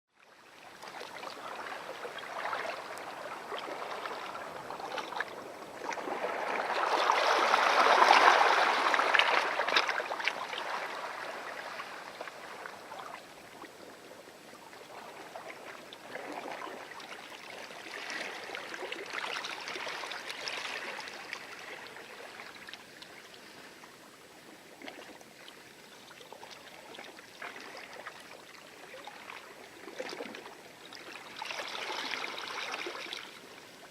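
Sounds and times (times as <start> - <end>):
waves lapping on shore: 0.6 - 14.0, 14.7 - 25.8, 26.4 - 33.9.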